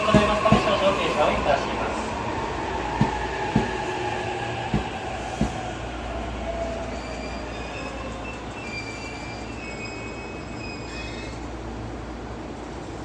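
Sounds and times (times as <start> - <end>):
train rumble: 0.0 - 13.0
high wheel squeal: 6.9 - 11.5.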